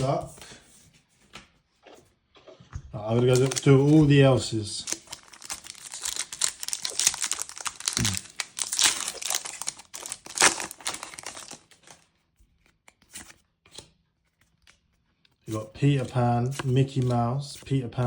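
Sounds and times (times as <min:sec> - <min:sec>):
plastic foil wrapper tearing: 0:03.0 - 0:12.0.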